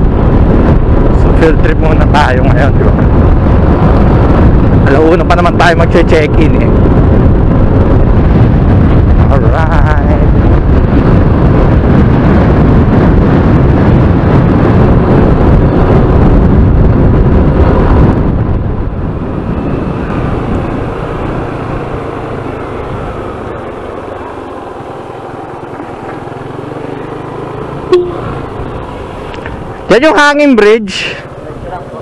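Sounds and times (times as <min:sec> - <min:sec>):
road noise: 0:00.0 - 0:32.0
wind buffeting microphone: 0:00.0 - 0:32.0
scooter engine hum: 0:10.0 - 0:30.0
horn toot: 0:27.8 - 0:28.4.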